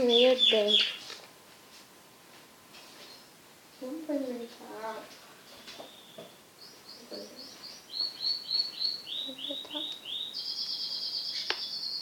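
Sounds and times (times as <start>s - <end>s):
songbird chirping and trilling: 0.0s - 1.1s, 5.5s - 12.0s.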